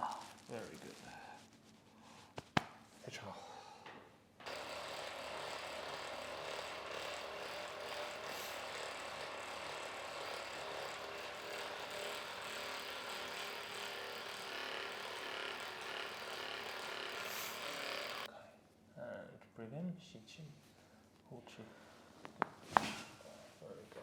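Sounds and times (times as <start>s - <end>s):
motorised device buzzing: 4.4s - 18.3s.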